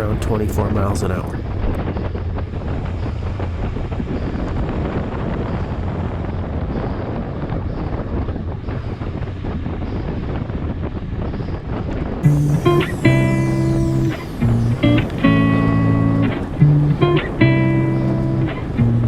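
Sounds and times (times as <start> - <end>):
wind rushing over microphone: 0.0 - 12.3.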